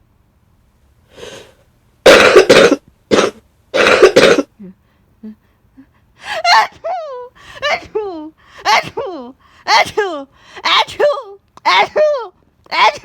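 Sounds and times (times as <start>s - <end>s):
person coughing: 2.1s - 4.6s.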